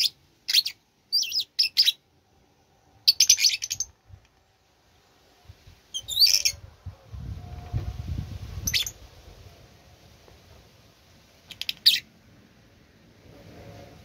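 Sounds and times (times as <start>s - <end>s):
bird squawking chirps: 6.0s - 6.6s
low rumble: 6.6s - 10.6s.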